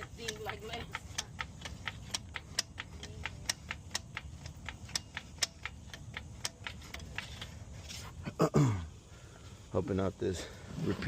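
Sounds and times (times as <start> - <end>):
ratchet clicking: 0.0 - 8.0.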